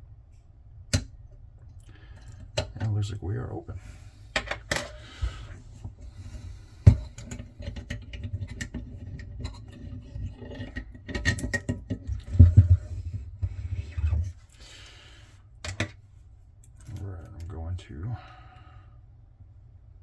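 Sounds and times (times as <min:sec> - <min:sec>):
metal clicks and scrapes: 0:06.4 - 0:13.2.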